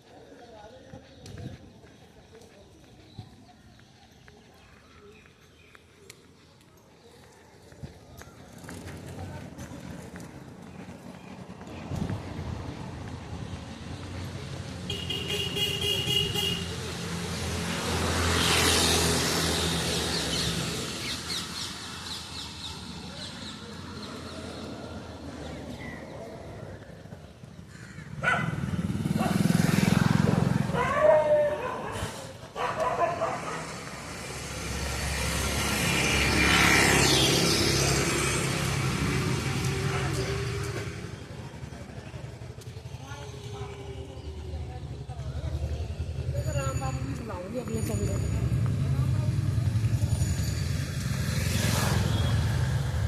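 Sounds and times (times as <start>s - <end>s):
vehicle horn: 14.9s - 16.8s
vehicle passing by: 16.4s - 53.0s.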